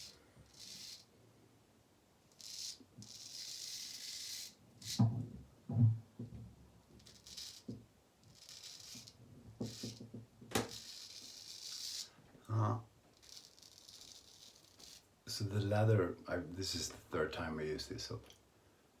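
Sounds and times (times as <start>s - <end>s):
soft thuds: 5.0s - 6.5s.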